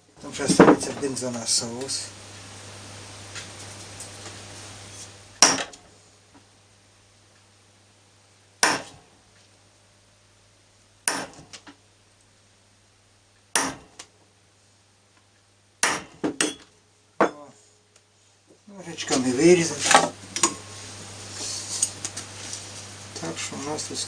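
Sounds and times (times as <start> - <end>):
hammer striking steel punch: 5.4 - 5.8, 8.6 - 9.0, 11.0 - 11.4, 13.6 - 14.0, 15.8 - 17.4.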